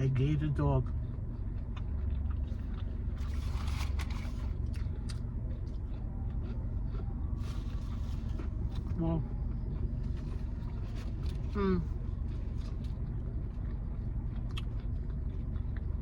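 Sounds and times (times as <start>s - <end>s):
person eating: 1.8s - 8.9s.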